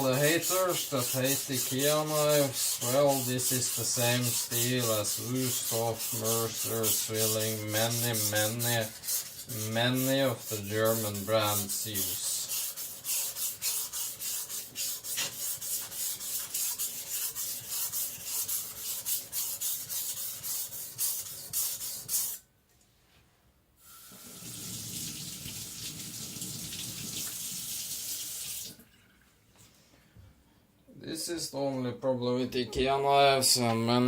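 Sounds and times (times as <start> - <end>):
blade grinding on a whetstone: 0.0 - 22.4
water tap running: 23.8 - 29.2.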